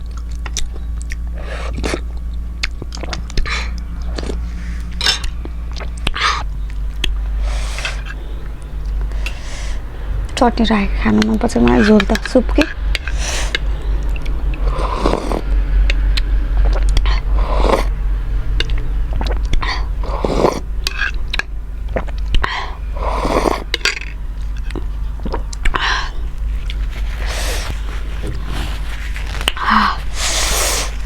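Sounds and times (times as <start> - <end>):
chewing with wet mouth clicks: 0.0 - 7.2, 12.9 - 17.2, 18.6 - 22.5, 23.4 - 27.0
steady low hum: 0.0 - 31.0
short breathy noisy burst: 29.8 - 31.0.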